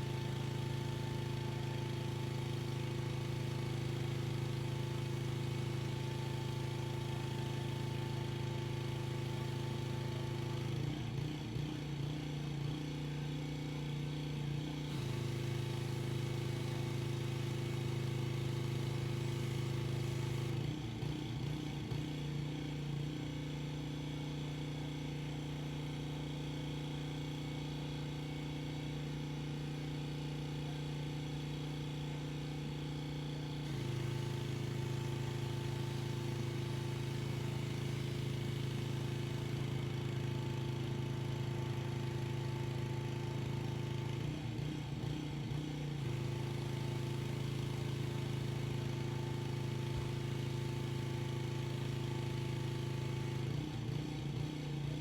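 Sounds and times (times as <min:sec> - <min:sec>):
pressure washer engine running: 0:00.0 - 0:12.7, 0:14.0 - 0:23.1, 0:32.4 - 0:55.0.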